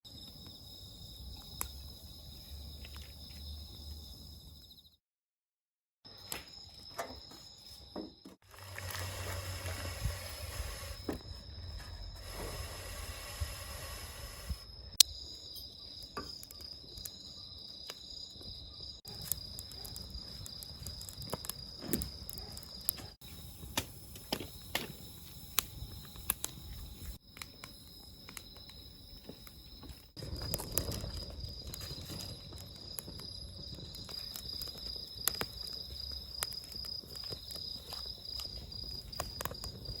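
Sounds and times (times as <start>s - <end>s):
high-pitched insect trill: 6.1s - 40.0s
wood fire crackling: 8.4s - 40.0s.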